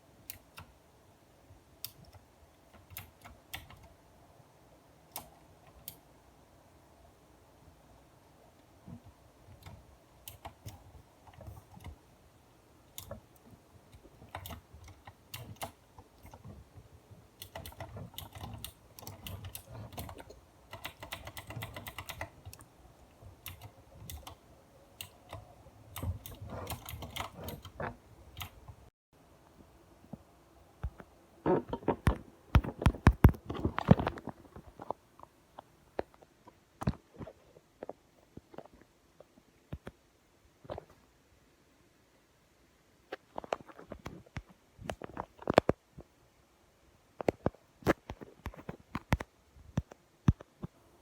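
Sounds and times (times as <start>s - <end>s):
computer keyboard typing: 1.8s - 3.9s, 9.5s - 12.0s, 13.9s - 16.6s, 17.4s - 24.4s, 25.0s - 28.7s.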